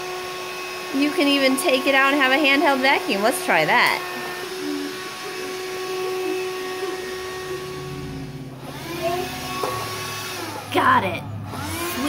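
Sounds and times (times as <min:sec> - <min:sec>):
hand vacuum motor whine: 0:00.0 - 0:12.0
low buzz: 0:04.0 - 0:12.0.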